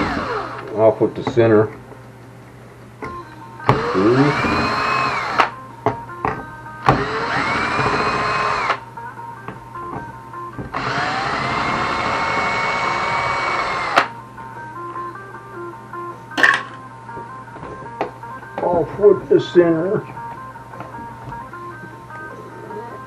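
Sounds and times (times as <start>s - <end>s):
electric screwdriver whining: 0.0s - 0.8s, 3.6s - 5.6s, 6.8s - 8.8s, 10.6s - 14.1s
faint music: 0.0s - 23.0s.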